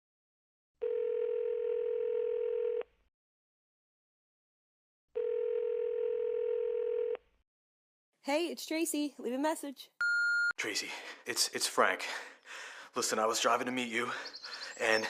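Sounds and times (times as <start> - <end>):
telephone ringback tone: 0.8 - 2.8, 5.2 - 7.2.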